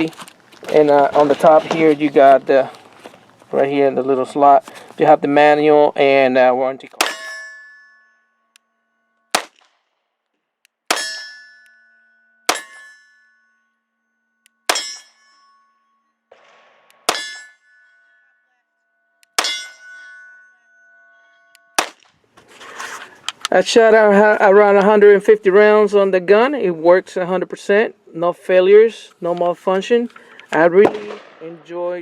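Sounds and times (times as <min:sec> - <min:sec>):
pistol shots with ringing: 0:06.9 - 0:08.1, 0:09.3 - 0:09.8, 0:10.9 - 0:11.9, 0:12.5 - 0:13.4, 0:14.6 - 0:18.3, 0:19.3 - 0:20.6, 0:21.2 - 0:22.1.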